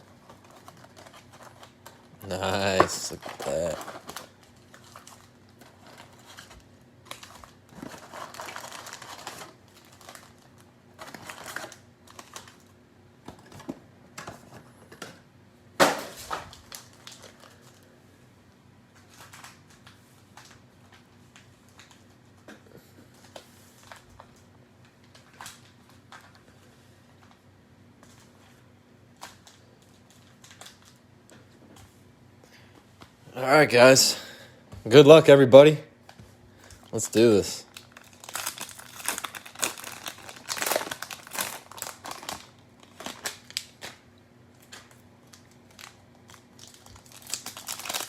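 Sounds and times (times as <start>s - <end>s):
plastic wrap crinkling: 0.1s - 12.7s, 16.2s - 17.9s, 37.0s - 48.0s.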